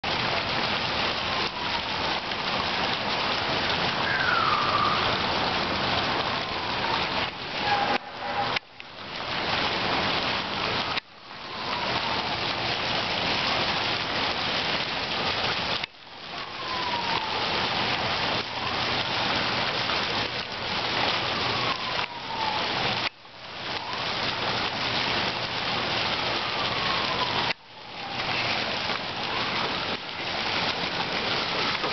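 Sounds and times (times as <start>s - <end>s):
large fire crackling and rushing: 0.0s - 31.9s
faint falling siren tones: 3.8s - 8.8s, 10.7s - 12.8s, 16.2s - 19.3s, 21.0s - 23.1s, 25.6s - 30.3s.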